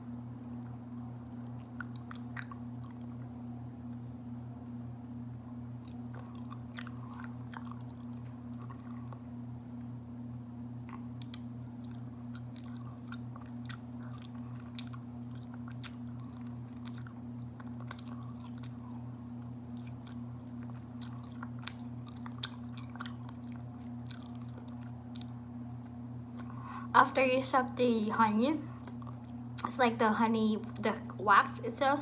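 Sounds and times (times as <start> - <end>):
steady low hum: 0.0 - 32.0
wet chewing of honeycomb: 0.6 - 3.3, 5.8 - 9.2, 10.9 - 26.6.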